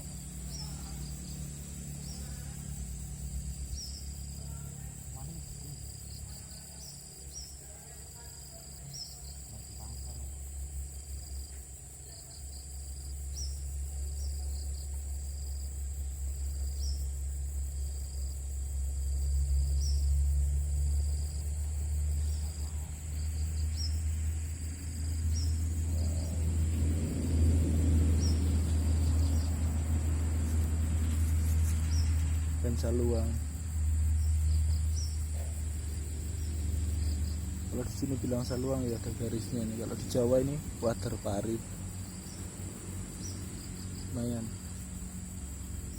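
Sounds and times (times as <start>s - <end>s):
insects droning: 0.0s - 45.9s
low rumble: 18.3s - 45.9s.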